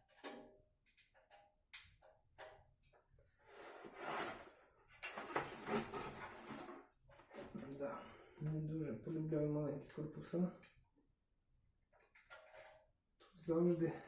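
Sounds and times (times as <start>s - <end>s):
scraping and rubbing in pc case: 3.4s - 7.5s.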